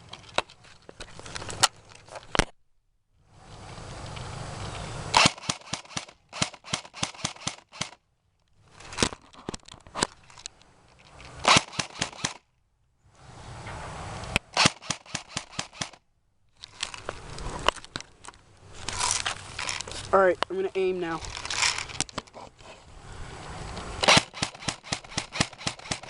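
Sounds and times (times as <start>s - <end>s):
airsoft guns firing: 5.1s - 8.0s, 11.4s - 12.4s, 14.6s - 16.0s, 24.0s - 26.0s.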